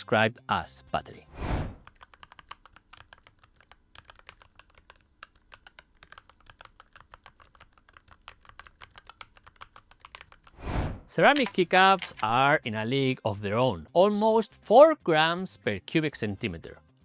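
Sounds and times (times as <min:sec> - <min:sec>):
mechanical keyboard typing: 0:01.7 - 0:10.6, 0:11.3 - 0:12.4.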